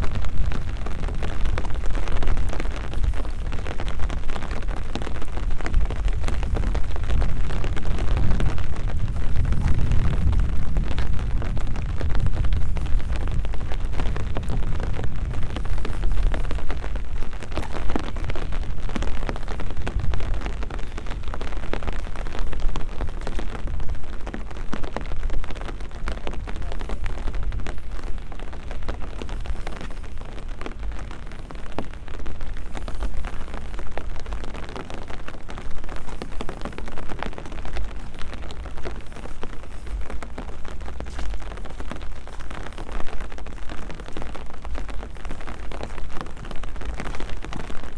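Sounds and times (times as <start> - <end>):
steady rain falling: 0.0 - 47.9
low rumble: 5.4 - 21.3.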